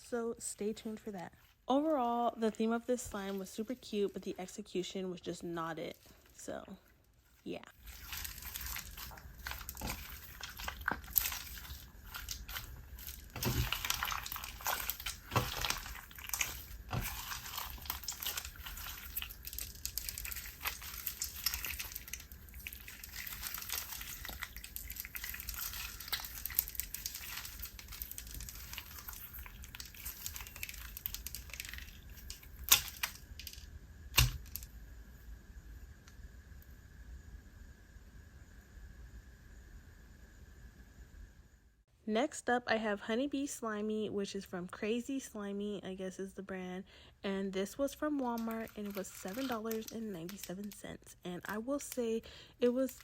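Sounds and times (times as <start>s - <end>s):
slime squished by hand: 7.8s - 34.6s, 48.4s - 50.4s.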